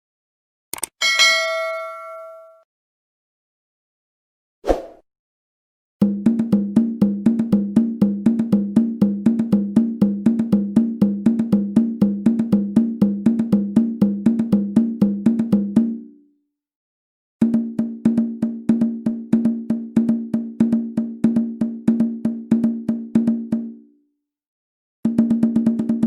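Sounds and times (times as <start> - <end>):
conga drum strokes: 6.0 - 15.9.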